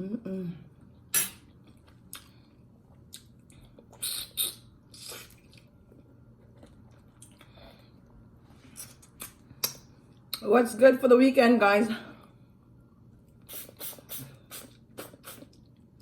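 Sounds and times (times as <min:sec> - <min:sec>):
chewing with wet mouth smacks: 0:01.4 - 0:07.6.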